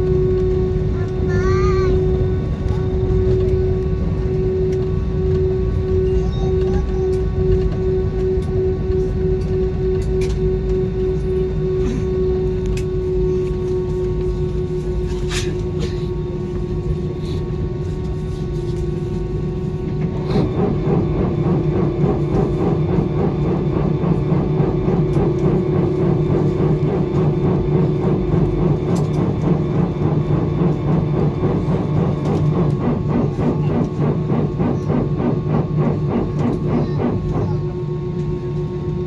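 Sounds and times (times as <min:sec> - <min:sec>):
jet engine and airflow drone: 0:00.0 - 0:39.0
rumbling rattle: 0:19.9 - 0:38.3.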